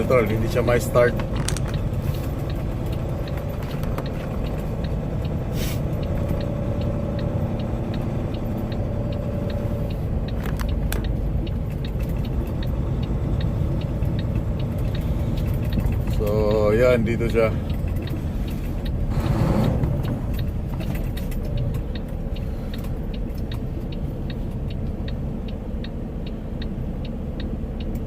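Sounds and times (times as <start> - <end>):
diesel truck engine idling: 0.0 - 28.0
air hiss bursts: 5.5 - 5.8.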